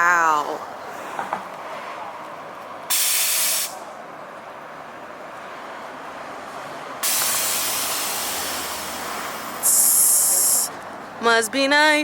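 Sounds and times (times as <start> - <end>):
air suspension valve hissing: 2.9 - 3.8, 7.0 - 10.7.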